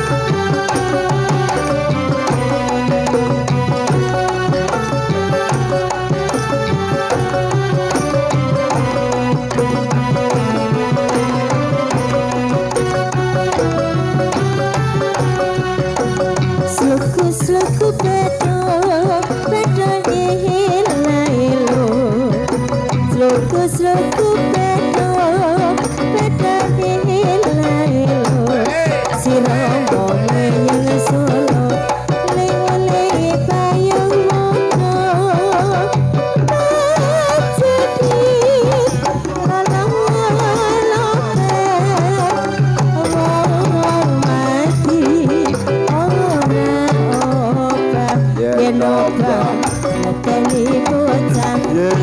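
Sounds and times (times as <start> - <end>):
drums beating steady rhythm: 0.0 - 52.0
pulsing bass line: 0.0 - 52.0
person singing wavering voice: 23.2 - 52.0.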